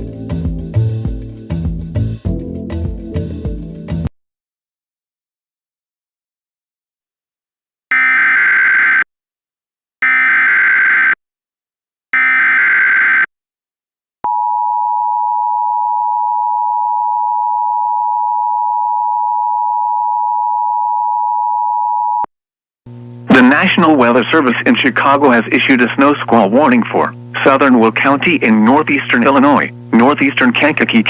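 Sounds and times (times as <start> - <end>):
two-tone alert alarm: 7.9 - 9.0, 10.0 - 11.2, 12.2 - 13.3.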